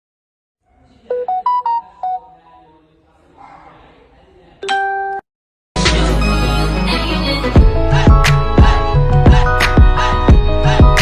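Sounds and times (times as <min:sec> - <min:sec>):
electronic beeps: 0:01.1 - 0:02.7
music: 0:05.8 - 0:11.0.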